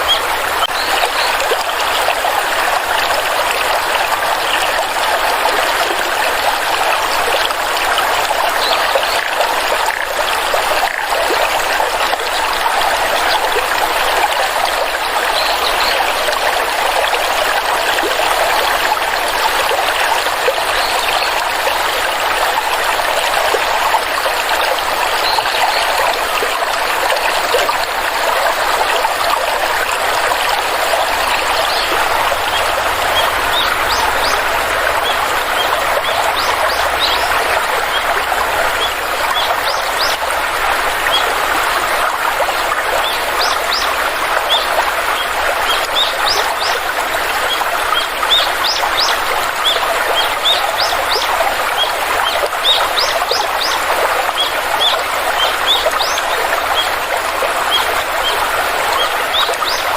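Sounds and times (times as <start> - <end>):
stream water flowing: 0.0 - 59.9.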